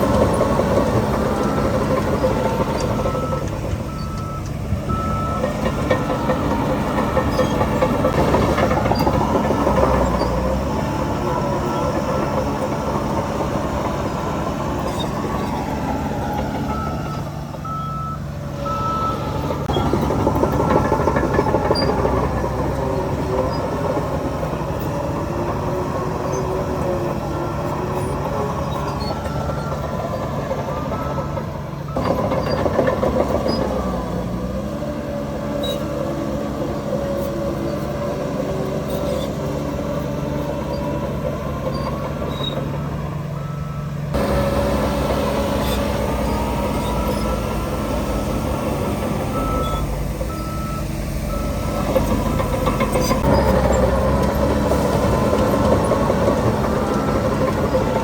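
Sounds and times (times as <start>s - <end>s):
heavy diesel machinery running: 0.0s - 58.0s
reversing alarm beeps: 1.4s - 6.7s, 16.6s - 22.1s, 27.4s - 32.7s, 41.6s - 53.5s.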